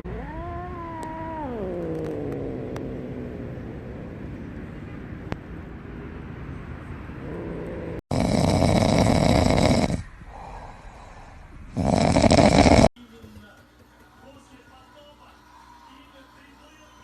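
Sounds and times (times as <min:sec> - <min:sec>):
cat snoring: 0:07.2 - 0:13.0.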